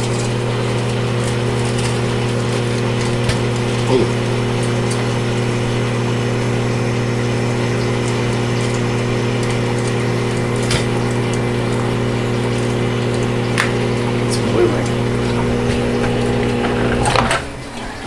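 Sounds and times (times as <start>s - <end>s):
fan noise: 0.0s - 18.0s
microwave oven humming: 0.0s - 18.0s
microwave click: 1.3s - 17.6s.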